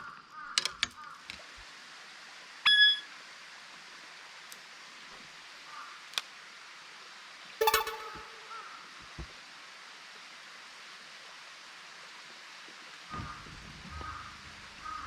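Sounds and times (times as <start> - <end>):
knocks and short tones: 7.6 - 8.6
sharp metallic ding: 7.6 - 8.6.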